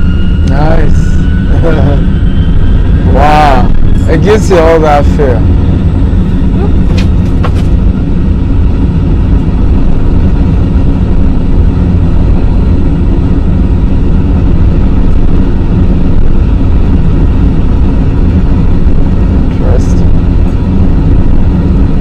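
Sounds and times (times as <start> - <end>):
jet engines rumbling: 0.0 - 22.0.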